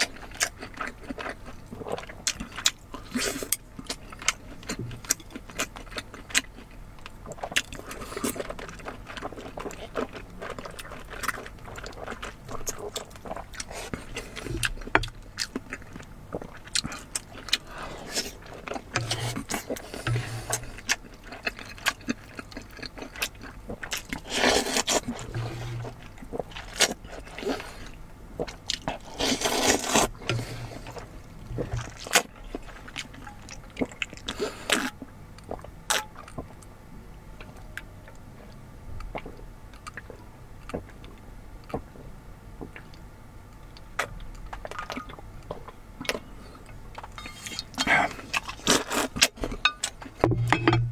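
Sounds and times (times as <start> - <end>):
scraping or slurping: 17.6 - 21.0, 24.0 - 28.0, 29.0 - 32.9.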